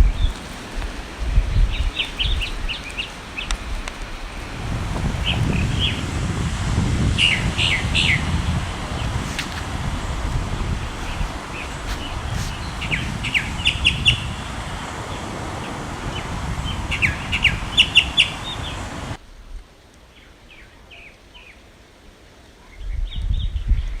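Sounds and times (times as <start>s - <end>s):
wind rumble on microphone: 0.0s - 19.8s, 22.7s - 24.0s
bird singing sharp notes: 7.1s - 19.2s.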